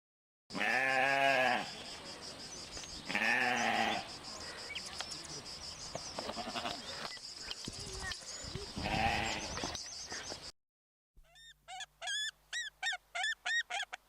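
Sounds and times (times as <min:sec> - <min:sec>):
sheep bleating: 0:00.5 - 0:01.7, 0:03.1 - 0:04.0, 0:06.2 - 0:06.8, 0:08.8 - 0:09.5.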